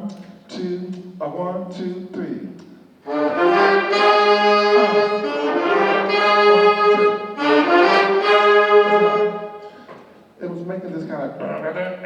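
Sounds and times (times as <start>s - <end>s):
jazz band horns playing riff: 3.0s - 9.8s.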